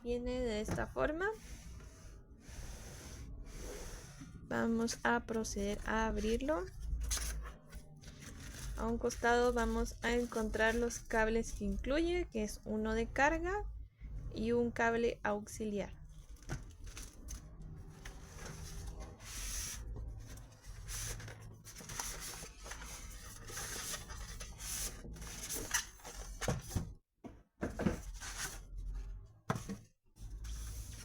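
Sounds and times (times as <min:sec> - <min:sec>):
cardboard packaging rustling: 0:06.2 - 0:10.8, 0:16.2 - 0:26.7.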